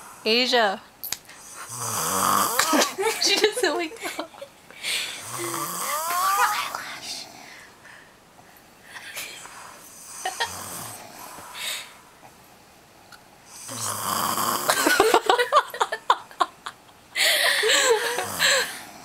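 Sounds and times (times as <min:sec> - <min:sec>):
girl snoring: 0:01.6 - 0:03.0, 0:05.0 - 0:07.6, 0:10.2 - 0:11.9, 0:13.6 - 0:15.1, 0:17.7 - 0:19.0
faint breaths: 0:04.7 - 0:05.6, 0:06.8 - 0:12.2, 0:17.2 - 0:19.0.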